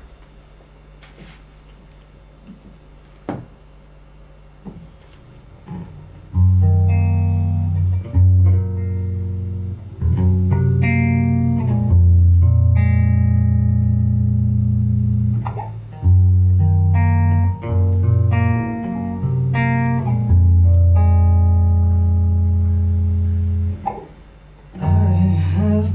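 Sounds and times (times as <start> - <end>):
soft knocks: 2.5 - 3.6, 4.6 - 5.1
guitar playing slow chords: 5.5 - 25.9.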